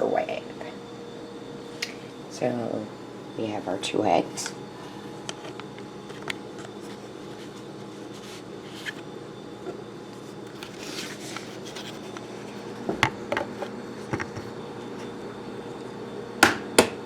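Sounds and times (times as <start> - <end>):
low room hum: 0.0 - 17.0
handling clicks and scrapes: 10.5 - 12.6.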